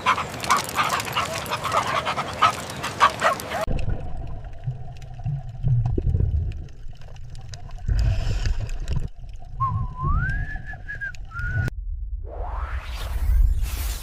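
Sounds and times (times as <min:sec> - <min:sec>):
low rumbling noise: 0:03.7 - 0:13.8
rising sweep: 0:12.0 - 0:14.0.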